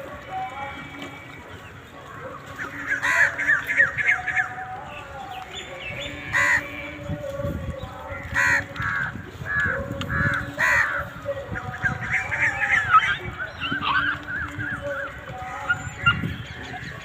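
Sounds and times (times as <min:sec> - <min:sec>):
crows cawing: 0:02.7 - 0:04.5, 0:06.2 - 0:06.8, 0:08.1 - 0:11.3.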